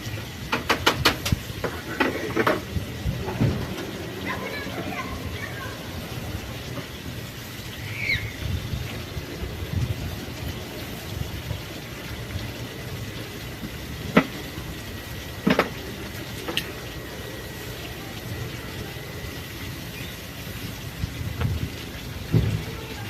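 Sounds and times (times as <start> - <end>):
kitchen utensils and dishes knocking: 0.5 - 2.6.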